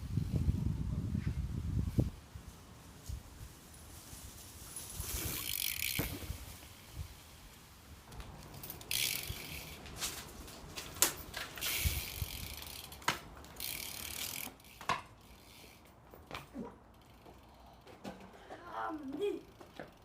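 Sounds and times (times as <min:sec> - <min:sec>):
bike tyres rolling: 0:00.1 - 0:20.0
bike freewheel ticking: 0:04.9 - 0:07.0, 0:08.1 - 0:15.9, 0:16.9 - 0:17.6
bike frame knocks: 0:14.2 - 0:15.2.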